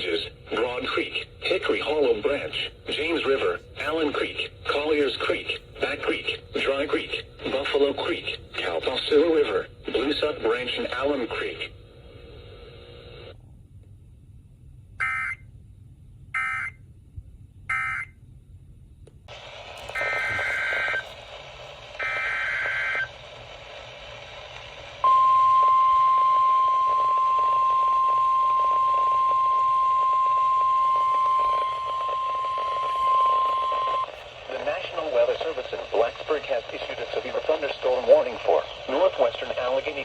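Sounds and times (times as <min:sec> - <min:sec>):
steady single-pitch alarm tone: 0:15.0 - 0:15.4, 0:16.4 - 0:16.8, 0:17.7 - 0:18.1, 0:25.0 - 0:34.1
screeching data bursts: 0:19.9 - 0:21.1.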